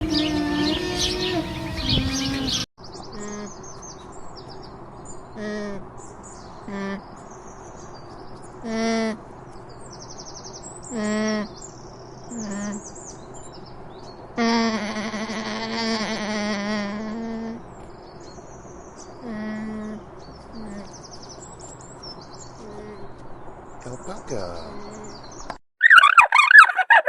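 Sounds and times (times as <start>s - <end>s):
alpaca humming: 0.0s - 3.6s, 14.4s - 17.6s
birds chirping: 0.0s - 16.0s, 17.0s - 27.0s.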